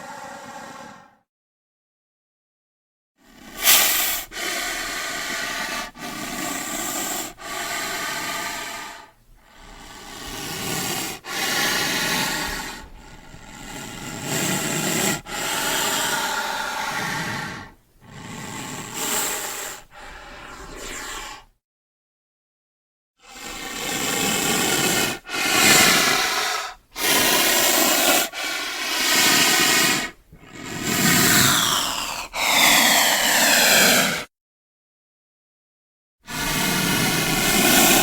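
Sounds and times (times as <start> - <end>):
snake hissing: 0.0 - 1.2, 3.2 - 21.5, 23.2 - 34.3, 36.3 - 38.0.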